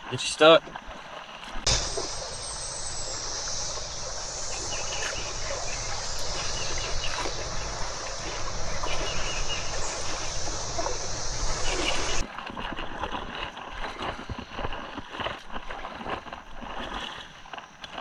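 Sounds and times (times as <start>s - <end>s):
running water: 0.0s - 18.0s
high insect buzz: 1.7s - 12.2s.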